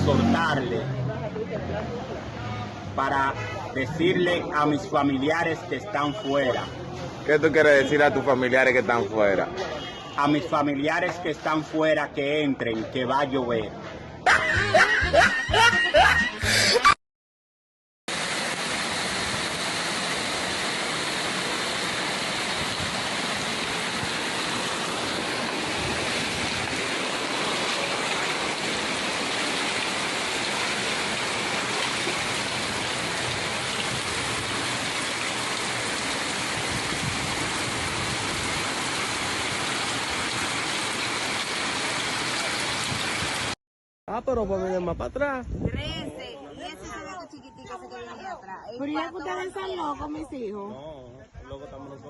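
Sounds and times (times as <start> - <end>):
heavy water rushing: 18.1 - 43.6.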